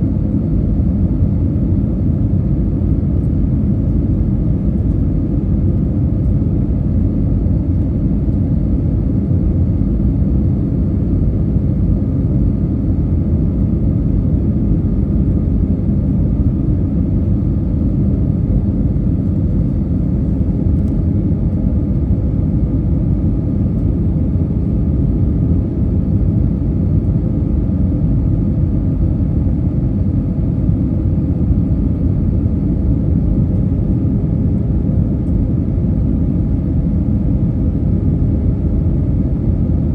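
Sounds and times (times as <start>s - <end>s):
aircraft cabin engine drone: 0.0s - 39.9s.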